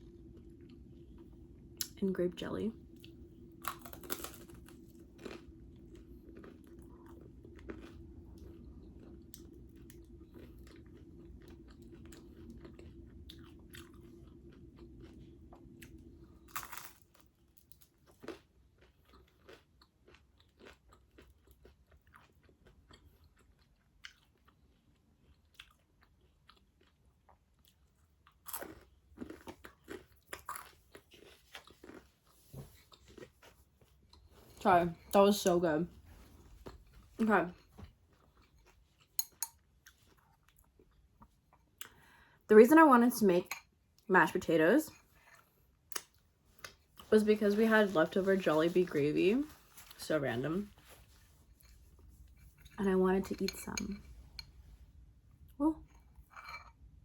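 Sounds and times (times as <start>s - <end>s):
chewing and crunching toast: 0.0s - 2.0s, 2.9s - 35.3s, 36.0s - 42.4s, 44.9s - 47.2s, 50.6s - 52.8s, 53.4s - 57.0s
steady low hum: 0.0s - 18.6s, 32.4s - 57.0s.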